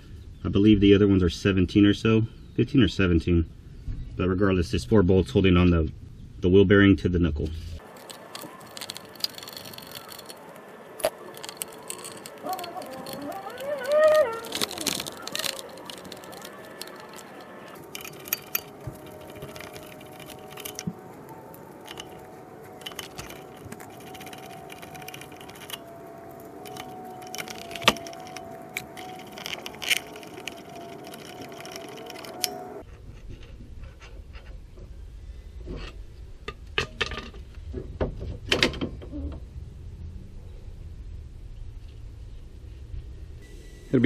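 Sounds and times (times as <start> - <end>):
steady hum: 7.5 - 32.9, 39.5 - 44.0
hand tools clicking on metal: 7.8 - 32.8.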